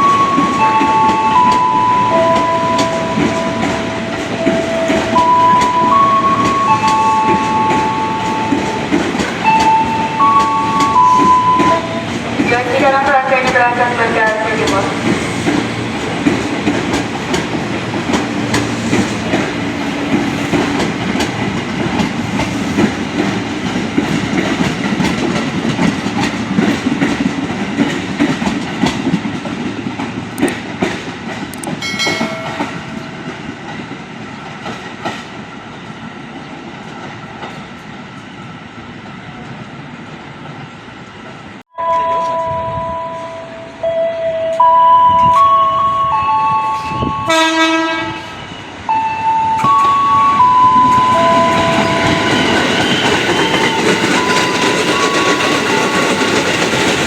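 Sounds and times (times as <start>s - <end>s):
train rumble: 0.0s - 57.0s
train wheels clicking over rail joints: 0.2s - 35.5s, 50.8s - 57.0s
train horn: 9.4s - 14.9s, 41.7s - 56.2s.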